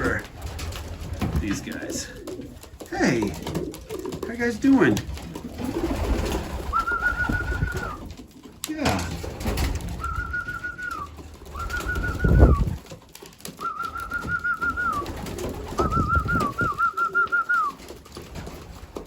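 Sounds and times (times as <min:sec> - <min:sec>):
pigeons cooing: 0:00.0 - 0:19.0
wings fluttering: 0:00.0 - 0:19.0
trilled warbling whistle: 0:06.7 - 0:08.0, 0:10.0 - 0:12.7.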